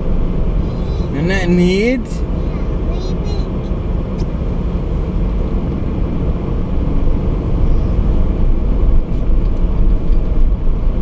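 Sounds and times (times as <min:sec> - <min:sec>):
car interior rumble: 0:00.0 - 0:11.0.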